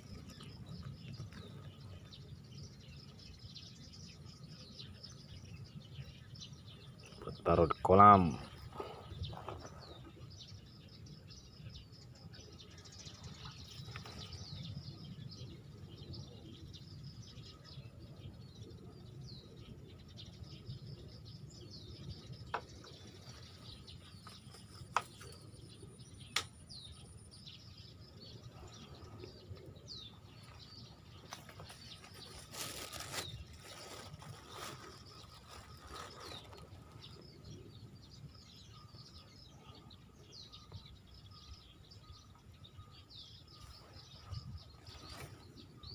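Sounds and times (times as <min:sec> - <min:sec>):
birds chirping: 0:00.0 - 0:45.9
faint outdoor background: 0:00.0 - 0:45.9
rustling: 0:31.2 - 0:37.2.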